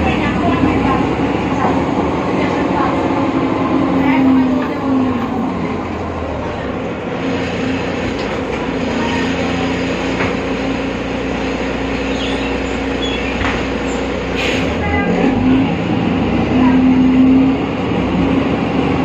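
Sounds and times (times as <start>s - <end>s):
bus interior low hum: 0.0s - 19.0s
drivetrain and road rumble: 0.0s - 19.0s.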